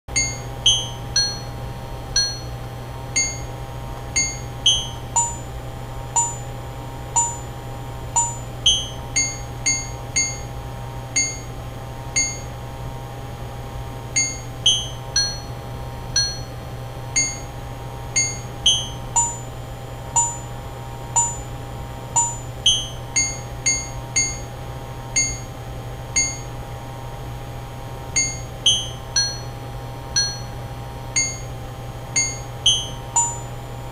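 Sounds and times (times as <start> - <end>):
high synth notes plinking: 0.1 - 1.6, 2.2 - 2.6, 3.2 - 3.5, 4.2 - 5.5, 8.2 - 10.5, 14.2 - 15.6, 16.2 - 16.6, 18.2 - 19.4, 22.2 - 24.4, 28.2 - 29.6, 30.2 - 30.6, 32.2 - 33.4
steady low hum: 0.1 - 33.9
held synth tone: 4.2 - 5.5, 8.2 - 10.5.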